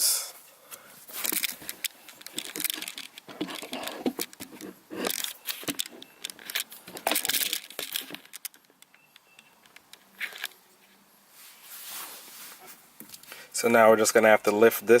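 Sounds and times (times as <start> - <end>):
metal parts and tools clinking: 1.1 - 10.6.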